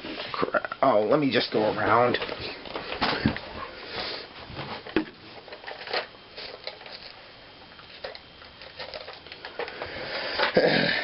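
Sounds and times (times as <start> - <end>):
plastic toy clicking and rustling: 5.5 - 7.1, 7.9 - 10.6.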